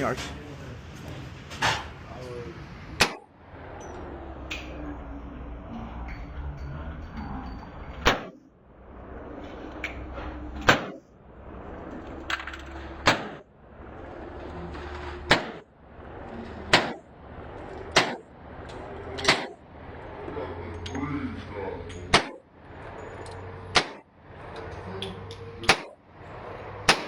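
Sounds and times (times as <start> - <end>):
low hum: 0.6 - 27.0
pistol shots: 3.0 - 3.3, 10.6 - 11.0, 13.0 - 13.4, 15.3 - 15.6, 16.7 - 17.0, 17.9 - 18.2, 19.2 - 19.6, 22.1 - 22.4, 23.8 - 24.0, 25.6 - 26.0.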